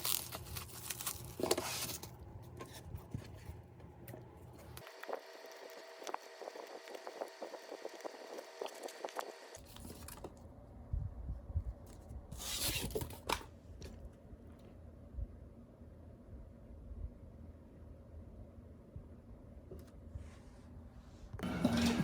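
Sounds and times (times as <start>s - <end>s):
packaging tearing rustle: 0.0s - 2.2s.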